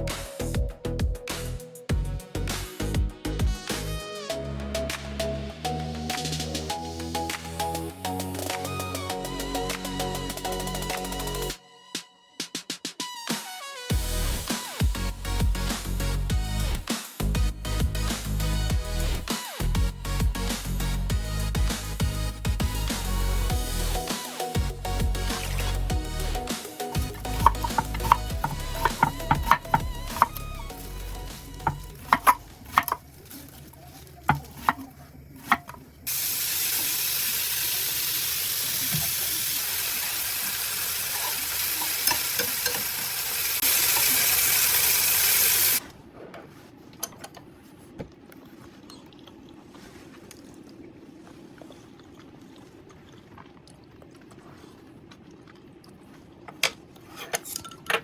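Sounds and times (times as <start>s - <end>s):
utensils clinking on cookware: 27.4s - 30.3s
food sizzling in frying pan: 36.1s - 45.8s.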